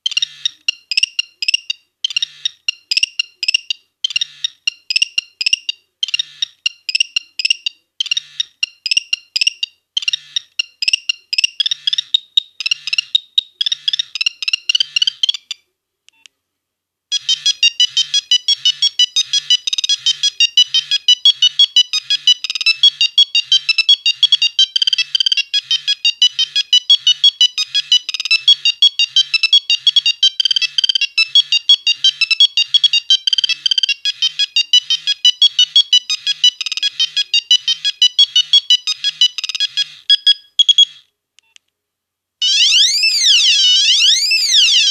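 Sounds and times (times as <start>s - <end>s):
mobile phone ringtone beeps: 4.1s - 4.8s, 5.5s - 7.3s, 10.1s - 15.4s, 17.1s - 41.0s, 42.4s - 44.9s.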